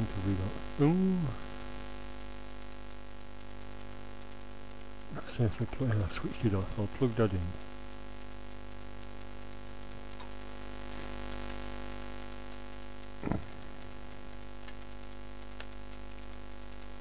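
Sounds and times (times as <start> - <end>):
electrical mains hum: 0.0 - 17.0
brief knock: 13.2 - 13.5.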